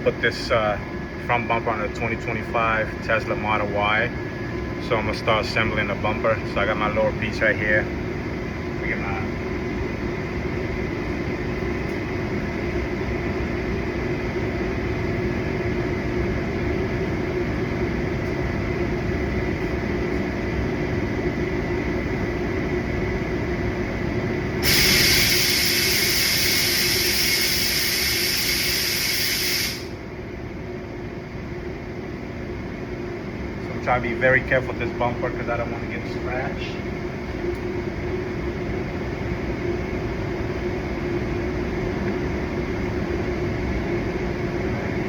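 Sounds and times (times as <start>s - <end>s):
ventilation hum: 0.0s - 45.0s
loud hiss: 24.6s - 29.9s.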